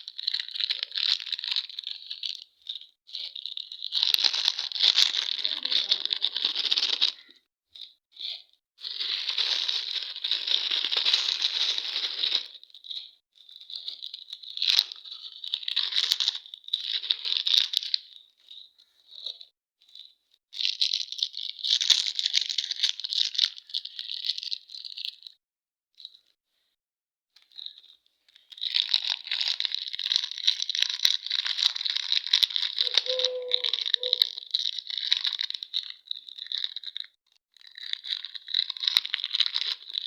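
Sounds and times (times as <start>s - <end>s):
plastic wrappers rustling: 3.9s - 7.4s, 9.0s - 12.5s, 15.1s - 17.9s, 27.8s - 37.0s.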